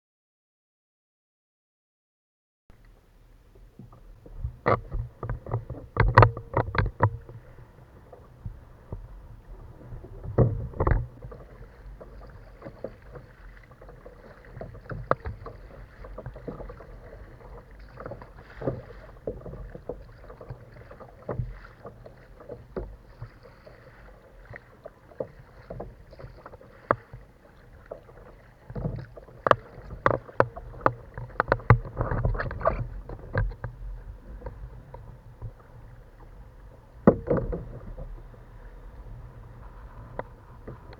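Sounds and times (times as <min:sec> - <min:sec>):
water knocking and splashing on kayak: 0:02.7 - 0:40.9.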